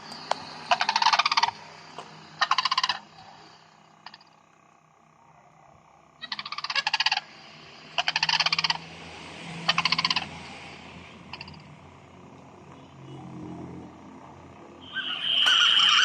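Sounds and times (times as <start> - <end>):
recorded bird call through speaker: 0.0 - 4.3, 6.2 - 7.3, 7.9 - 8.9, 14.8 - 16.0.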